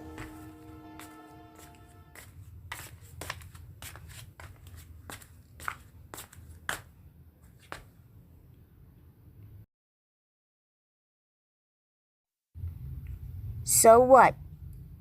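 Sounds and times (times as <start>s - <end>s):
held music notes: 0.0s - 2.4s.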